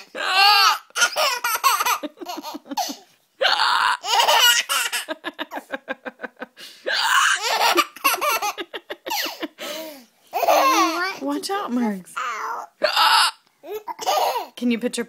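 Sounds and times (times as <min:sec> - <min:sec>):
baby laughing: 0:00.0 - 0:03.1, 0:04.0 - 0:05.7, 0:07.0 - 0:11.2, 0:13.6 - 0:14.5.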